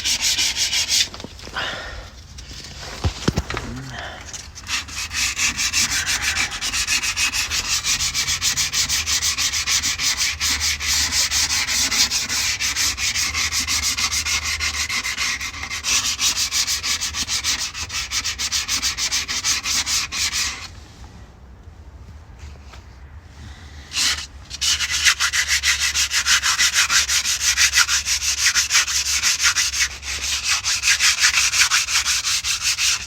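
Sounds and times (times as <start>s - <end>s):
sandpaper scraping metal: 0.0s - 1.2s, 4.5s - 20.7s, 23.9s - 33.0s.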